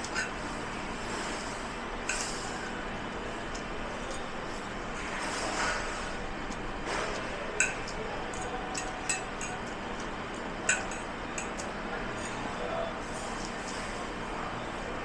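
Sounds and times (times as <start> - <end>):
dishes and glassware clinking: 0.0 - 0.5, 2.1 - 2.6, 7.6 - 9.8, 10.6 - 12.5.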